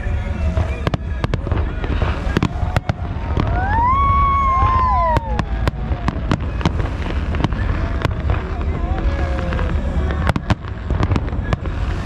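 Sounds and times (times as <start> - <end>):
fireworks bangs: 0.0 - 12.0
low rumble: 0.0 - 12.0.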